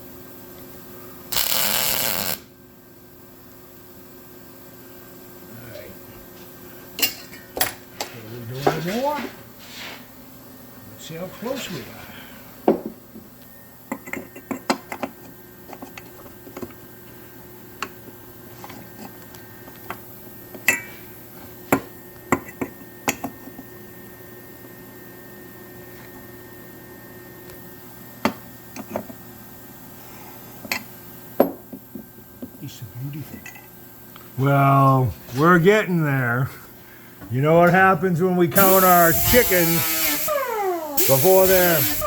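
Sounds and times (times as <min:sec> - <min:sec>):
faint steady hum: 0:09.4 - 0:42.0.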